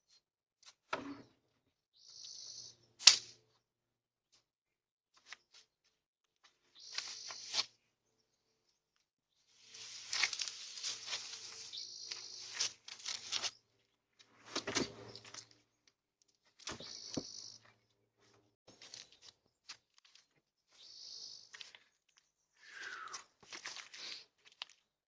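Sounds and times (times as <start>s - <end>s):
branches crackling and rustling: 6.5s - 7.7s, 9.5s - 13.6s, 18.7s - 24.9s.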